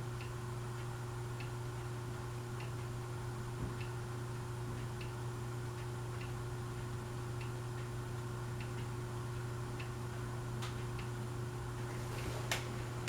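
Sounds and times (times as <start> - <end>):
ceiling fan motor hum: 0.0 - 13.0
faint light ticks: 0.2 - 1.9.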